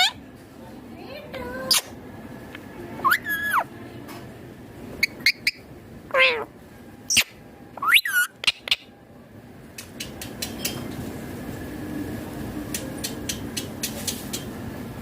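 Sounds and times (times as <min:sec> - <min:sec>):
parakeet calling: 0:03.0 - 0:03.7, 0:05.0 - 0:06.5, 0:07.1 - 0:08.9.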